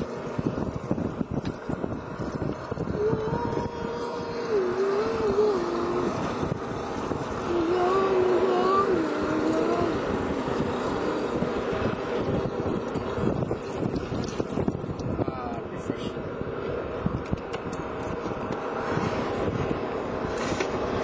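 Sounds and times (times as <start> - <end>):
wind rumble on microphone: 0.0 - 21.0
man singing or humming: 3.0 - 6.2, 7.4 - 10.0.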